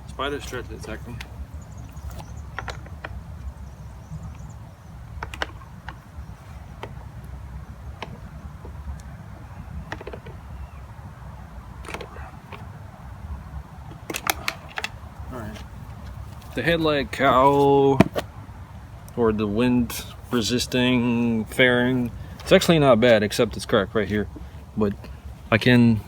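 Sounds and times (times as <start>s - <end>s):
motorcycle parts clicking: 11.8s - 12.7s, 13.8s - 16.1s.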